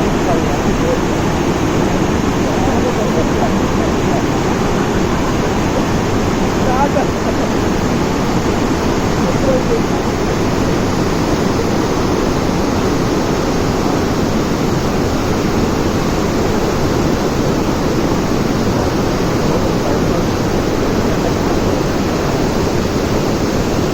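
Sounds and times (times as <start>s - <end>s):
dam water rushing: 0.0s - 23.9s.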